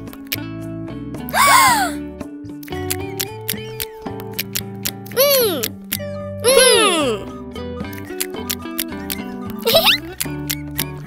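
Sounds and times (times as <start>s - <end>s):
light cartoon background music: 0.0s - 11.0s
cartoon pitch sweep sound effect: 5.2s - 5.7s, 6.4s - 7.3s, 9.7s - 10.0s.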